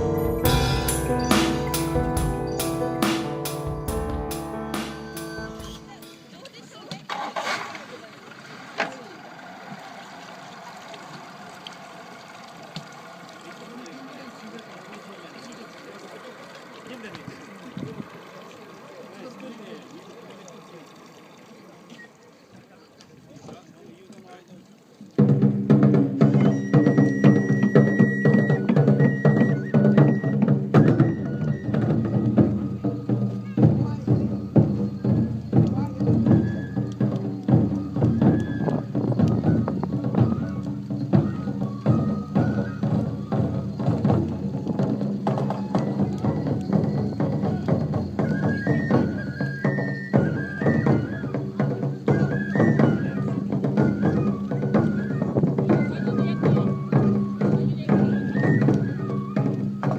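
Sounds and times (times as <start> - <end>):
rapid dense drumming: 0.0 - 6.4, 25.2 - 59.9
high melody with long notes: 0.0 - 6.6
low accompaniment: 0.0 - 6.6.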